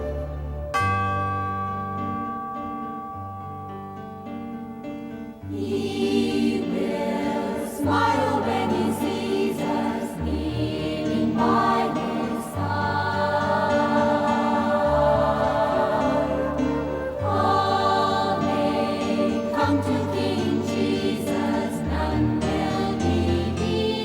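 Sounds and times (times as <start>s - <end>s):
choir singing a hymn: 5.4s - 24.0s.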